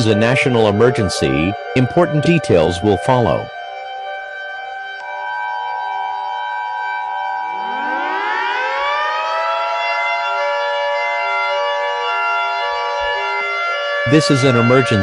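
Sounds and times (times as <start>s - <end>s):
civil defense sirens wailing: 0.0s - 15.0s
siren winding up: 0.0s - 15.0s.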